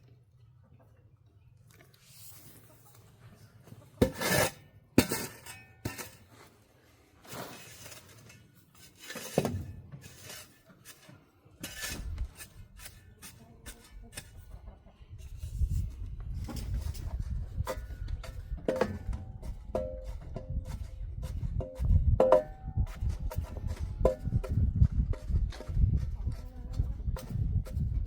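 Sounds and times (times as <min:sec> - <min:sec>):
scraping concrete mix and soil: 0:01.7 - 0:14.5, 0:15.2 - 0:28.0.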